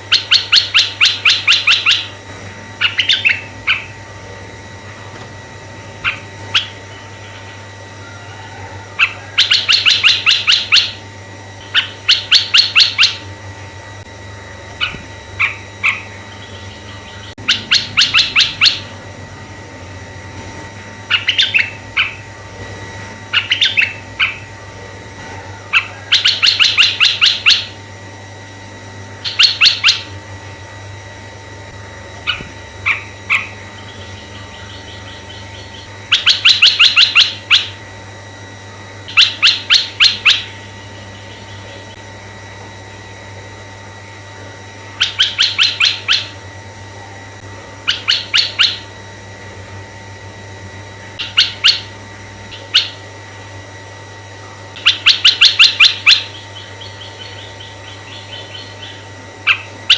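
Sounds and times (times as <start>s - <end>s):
bird chattering calls: 0.0s - 2.2s, 2.8s - 4.1s, 6.0s - 7.4s, 8.2s - 11.0s, 11.6s - 13.3s, 14.8s - 19.0s, 21.1s - 22.4s, 23.3s - 24.6s, 25.3s - 27.8s, 29.2s - 30.2s, 32.2s - 37.8s, 39.0s - 42.0s, 44.9s - 46.4s, 47.8s - 49.0s, 51.2s - 53.1s, 54.7s - 59.9s.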